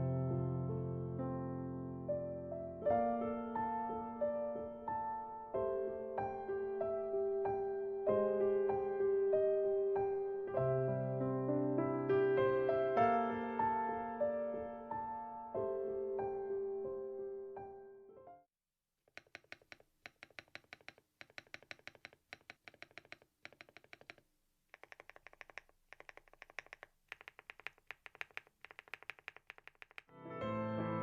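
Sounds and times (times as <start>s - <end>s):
piano music: 0.0s - 18.4s, 30.1s - 31.0s
mechanical keyboard typing: 19.1s - 30.1s.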